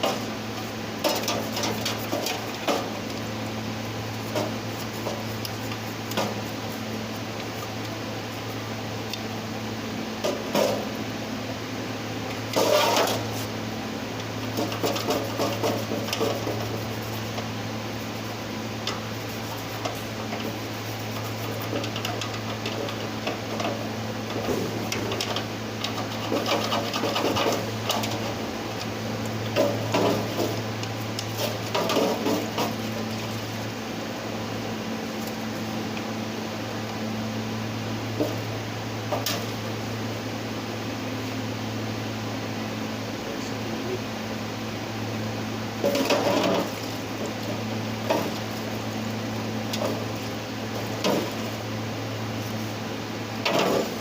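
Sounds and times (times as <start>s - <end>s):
scraping and clattering on metal: 1.0s - 2.9s, 12.5s - 13.4s, 21.4s - 28.4s.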